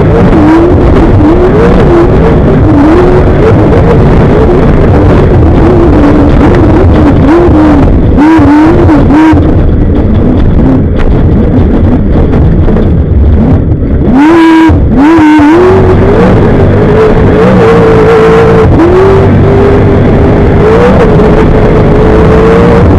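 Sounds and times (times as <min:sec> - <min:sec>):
low rumble: 0:00.0 - 0:22.9
race car engine revving: 0:00.0 - 0:22.9.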